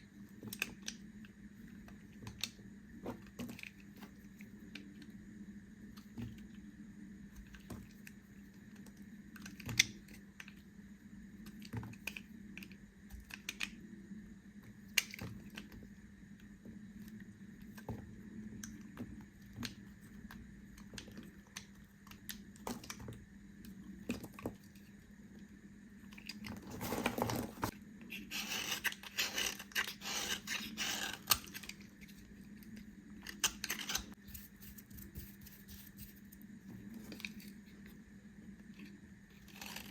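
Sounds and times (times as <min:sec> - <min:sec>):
knife cutting soap: 0:28.1 - 0:31.7, 0:39.4 - 0:39.9.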